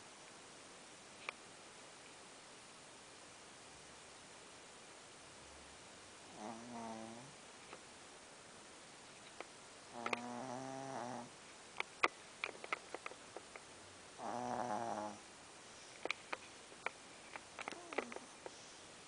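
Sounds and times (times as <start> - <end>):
pitched snores: 6.3 - 7.4, 9.9 - 11.3, 14.2 - 15.2
small clicks: 9.2 - 10.3, 16.0 - 18.6.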